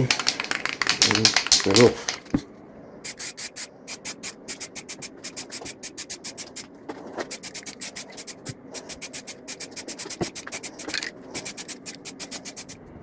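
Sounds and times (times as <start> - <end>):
aerosol spray bursts: 3.1 - 12.8.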